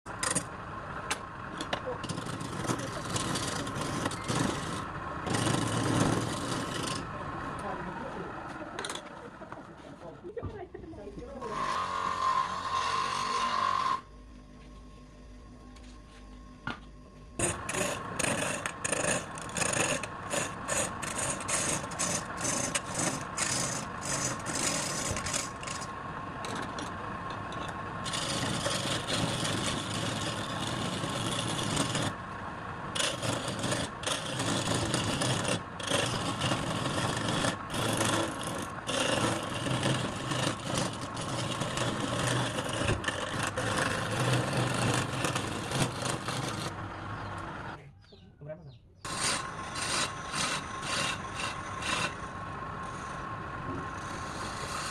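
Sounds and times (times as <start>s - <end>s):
wood lathe whine: 0.1s - 9.9s, 11.4s - 14.4s, 17.4s - 47.8s, 49.1s - 54.9s
turning tool rasping on wood: 2.0s - 7.1s, 11.4s - 14.0s, 17.4s - 27.0s, 27.6s - 32.2s, 32.9s - 46.8s, 49.1s - 53.2s, 53.8s - 54.9s.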